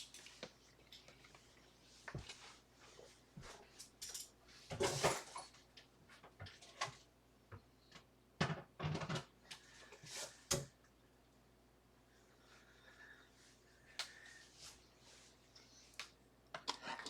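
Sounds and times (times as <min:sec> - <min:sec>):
tools rattling and clicking: 0:03.8 - 0:05.4.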